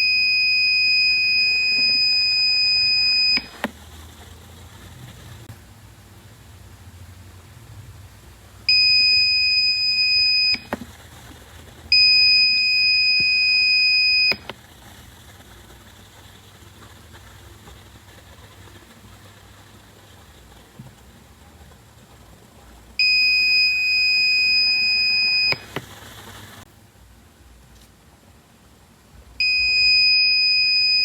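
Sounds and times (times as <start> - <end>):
high-pitched alarm buzzer: 0.0 - 3.6, 29.4 - 31.0
click: 3.3 - 3.8, 14.3 - 14.6, 25.5 - 25.9.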